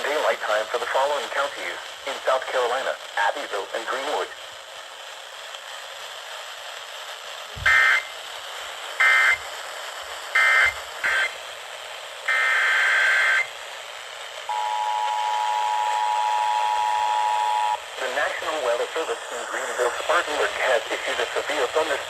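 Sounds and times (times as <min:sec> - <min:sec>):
digital data bursts: 0:07.6 - 0:08.1, 0:09.0 - 0:09.4, 0:10.3 - 0:11.4, 0:12.3 - 0:13.5
two-tone attention signal: 0:14.5 - 0:17.8.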